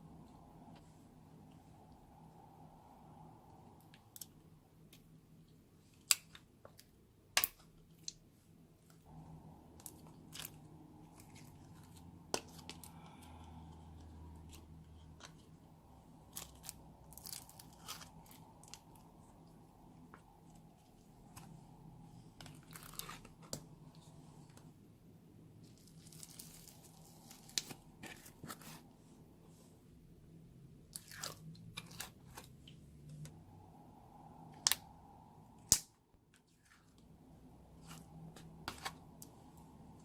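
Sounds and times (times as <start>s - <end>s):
slime crackling and crunching: 25.7s - 27.7s.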